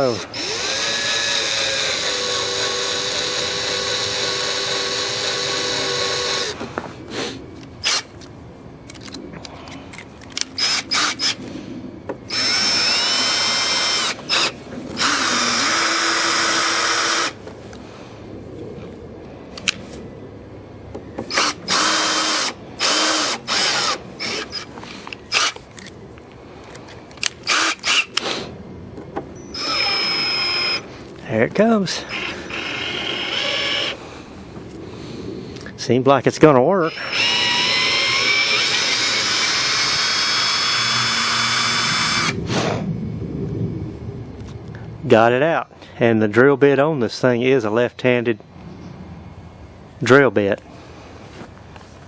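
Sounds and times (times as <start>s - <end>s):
electric drill motor whining: 0.0s - 6.8s, 7.8s - 8.1s, 10.6s - 11.4s, 12.3s - 17.4s, 21.3s - 25.6s, 27.4s - 28.5s, 29.4s - 30.9s, 32.0s - 34.0s, 36.8s - 42.6s.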